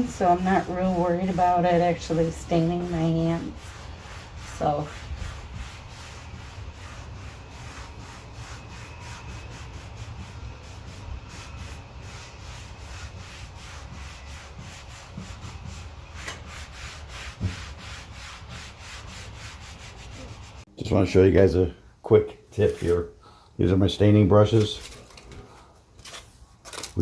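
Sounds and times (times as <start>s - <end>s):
cloth scrubbing on wood: 0.0s - 20.7s.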